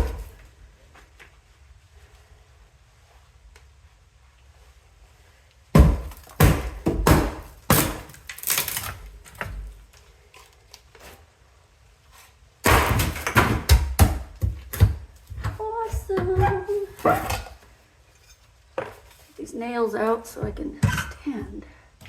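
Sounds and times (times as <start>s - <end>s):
hammer blows on wooden floorboards: 5.7s - 8.0s.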